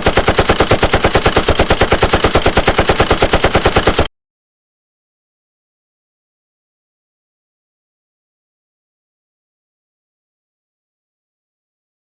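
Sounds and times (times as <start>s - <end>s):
machine gun automatic fire: 0.0s - 4.1s.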